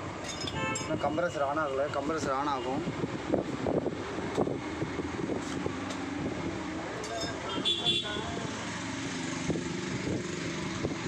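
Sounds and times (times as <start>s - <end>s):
road traffic hum: 0.0s - 11.0s
vehicle horn toot: 0.5s - 1.2s, 7.5s - 8.4s.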